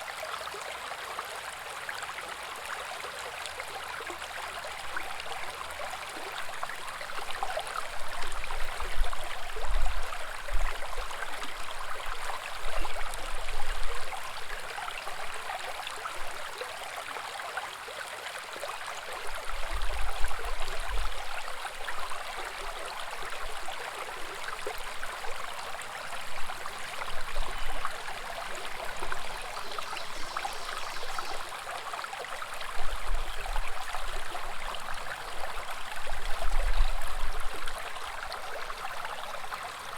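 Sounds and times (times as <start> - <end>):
brook babbling over stones: 0.0 - 39.9.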